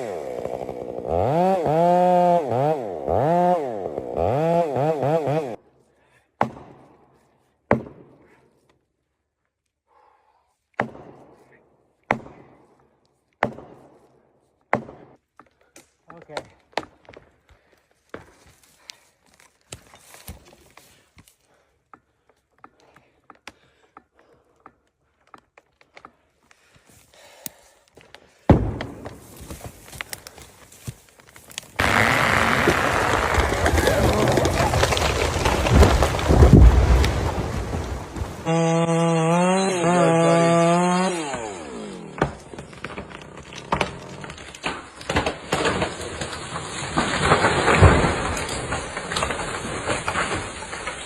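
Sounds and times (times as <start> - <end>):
chainsaw engine revving: 0.0 - 5.6, 31.8 - 36.4, 38.4 - 42.4.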